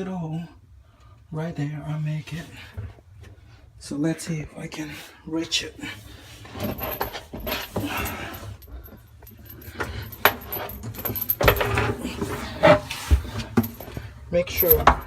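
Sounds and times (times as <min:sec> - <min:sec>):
metallic clinks and rattles: 0:06.6 - 0:12.2, 0:13.4 - 0:15.0.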